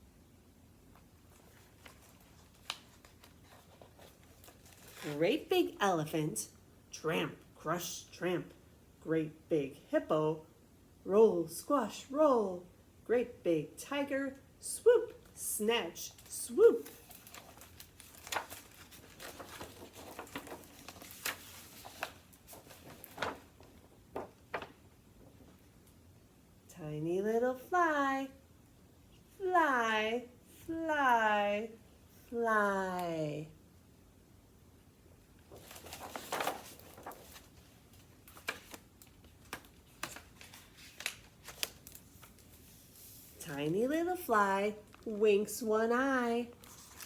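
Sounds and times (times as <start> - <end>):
book pages turning: 1.0 - 5.2, 16.8 - 25.7, 35.5 - 43.8, 46.6 - 47.0
paper rustle: 1.0 - 5.4, 16.1 - 25.8, 35.5 - 44.3, 46.6 - 47.0.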